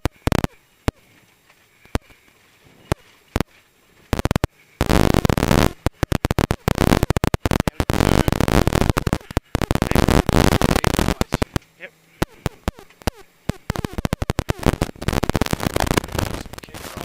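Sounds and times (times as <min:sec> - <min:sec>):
sharp clicks: 0:00.0 - 0:01.0, 0:04.1 - 0:17.0.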